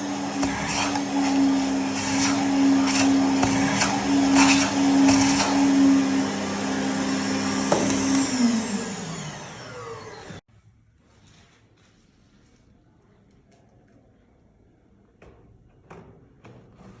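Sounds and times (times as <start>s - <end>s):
vacuum cleaner running: 0.0s - 10.5s.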